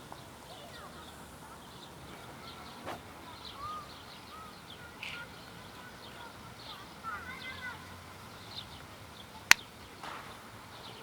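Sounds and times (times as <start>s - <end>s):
small birds chirping: 0.0s - 11.0s
sharp click: 9.5s - 9.7s.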